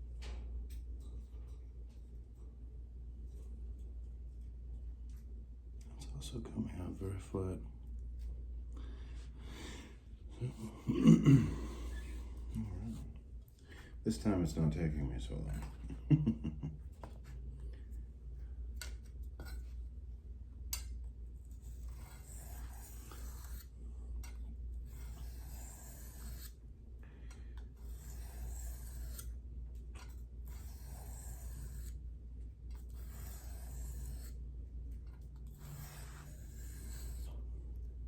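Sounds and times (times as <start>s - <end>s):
knife on sharpening stone: 21.8s - 23.7s, 24.9s - 26.6s, 27.8s - 29.3s, 30.5s - 32.0s, 32.8s - 34.4s, 35.6s - 37.3s.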